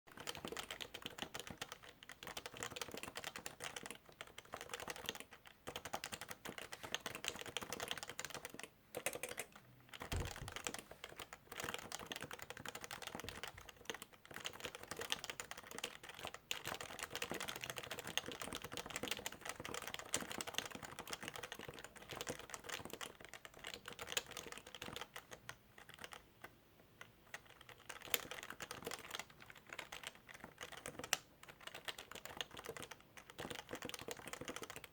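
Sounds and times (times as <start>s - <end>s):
fast typing on keyboard: 0.1s - 34.9s
low thump: 10.1s - 10.6s.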